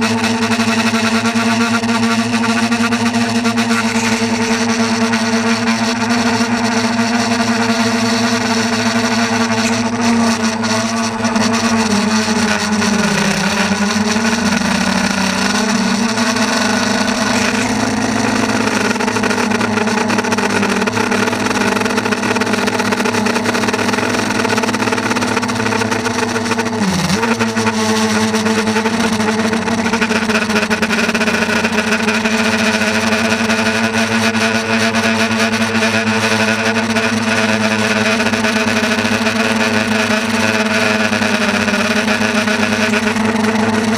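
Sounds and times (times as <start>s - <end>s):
motor running: 0.0s - 43.9s.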